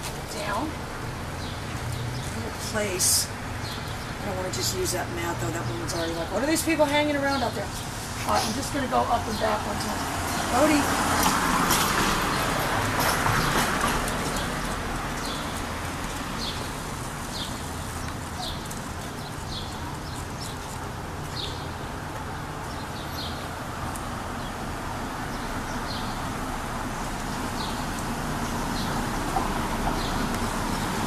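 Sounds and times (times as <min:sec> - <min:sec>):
street hum: 0:00.0 - 0:31.0
footsteps on pavement: 0:07.6 - 0:24.7.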